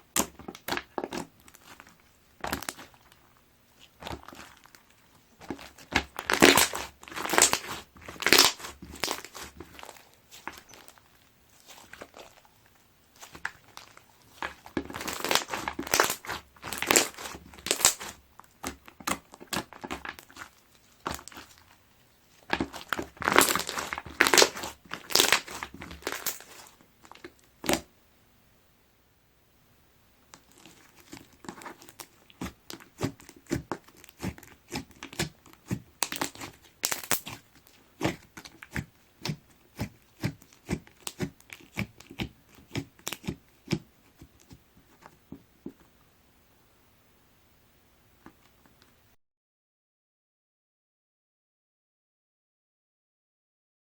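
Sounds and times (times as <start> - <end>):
slime crackling pops and clicks: 36.0 - 37.4.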